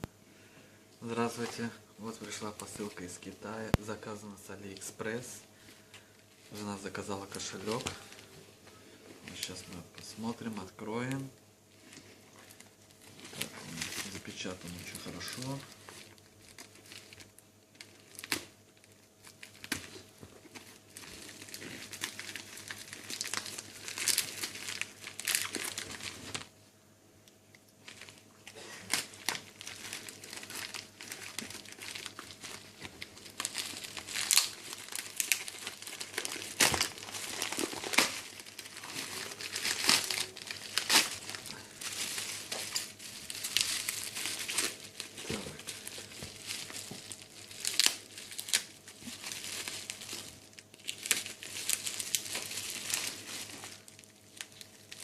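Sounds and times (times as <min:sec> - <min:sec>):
packaging crinkling and tearing: 0:06.5 - 0:08.3, 0:11.8 - 0:26.5, 0:27.6 - 0:55.0.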